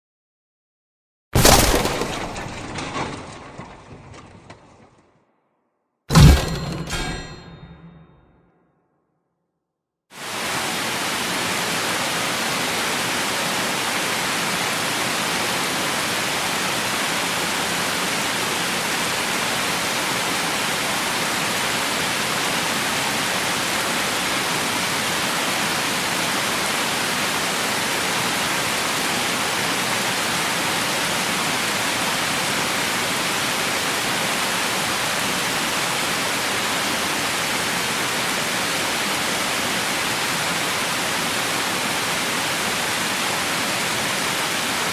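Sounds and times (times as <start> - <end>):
heavy rain hissing: 10.2 - 44.9.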